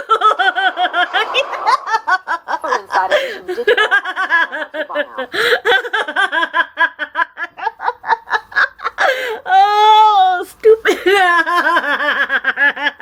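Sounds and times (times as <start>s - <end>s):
high drawn-out squeal: 0.0s - 3.1s
person laughing hard: 0.0s - 9.8s.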